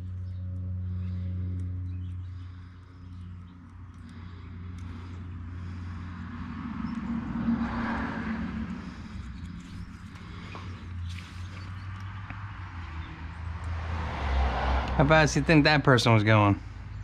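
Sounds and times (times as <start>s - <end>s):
car driving past: 4.2s - 17.0s.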